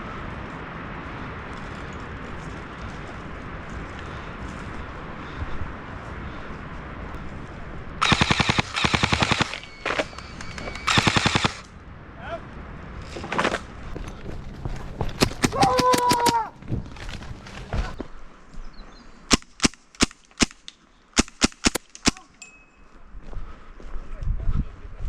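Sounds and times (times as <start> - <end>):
airsoft guns firing bursts: 8.0 - 11.7, 15.2 - 16.4, 21.2 - 22.3.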